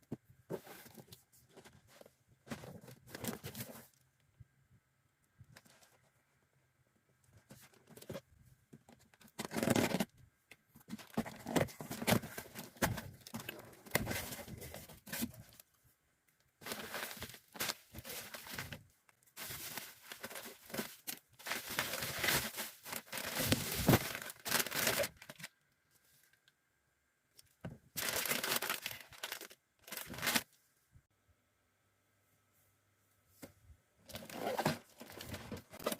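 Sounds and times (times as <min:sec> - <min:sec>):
wrapping tearing and crinkling: 0:16.6 - 0:18.8, 0:19.4 - 0:25.5, 0:28.0 - 0:30.5.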